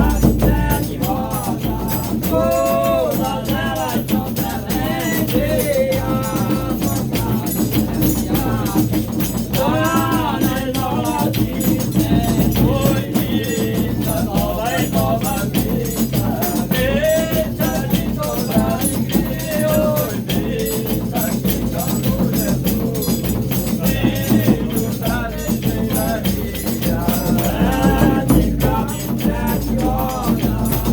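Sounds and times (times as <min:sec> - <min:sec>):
group singing: 0:00.0 - 0:30.9
shaken rattling percussion: 0:00.0 - 0:30.9.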